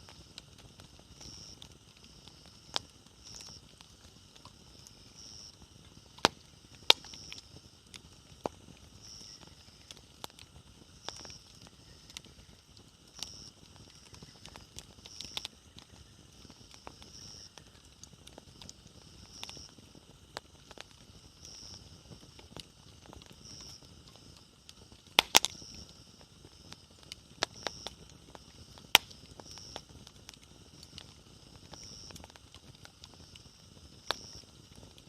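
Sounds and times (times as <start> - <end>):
wood bonfire crackling: 0.0 - 35.0.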